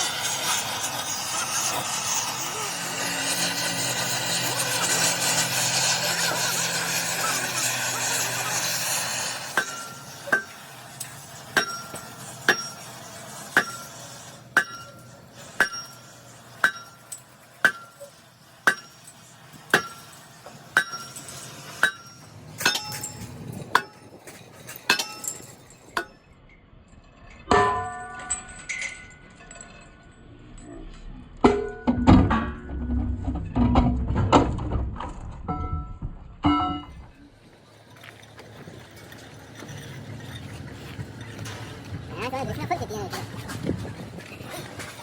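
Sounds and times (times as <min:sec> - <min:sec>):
hammer striking steel: 0:00.2 - 0:26.2, 0:27.5 - 0:29.5, 0:31.4 - 0:32.8, 0:35.5 - 0:37.0
metallic clatter: 0:03.3 - 0:45.0.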